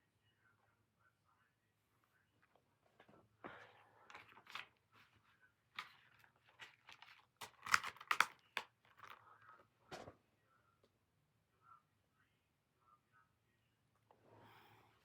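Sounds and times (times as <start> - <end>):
paper rustling: 4.1 - 9.2
plastic case clicks: 6.6 - 9.2.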